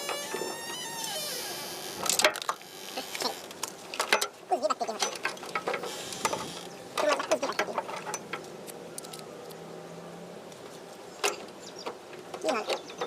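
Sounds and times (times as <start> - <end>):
metal parts clicking and clattering: 3.9 - 8.4.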